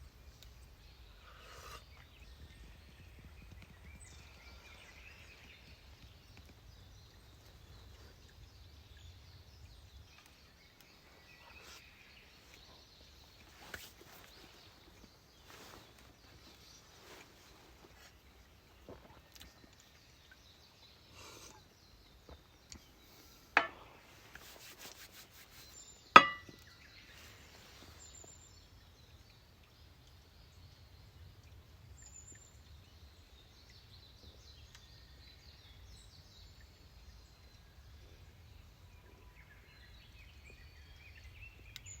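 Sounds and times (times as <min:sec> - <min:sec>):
faint outdoor background noise: 0:00.0 - 0:42.0
sharp knocks: 0:23.6 - 0:23.8, 0:26.2 - 0:26.6.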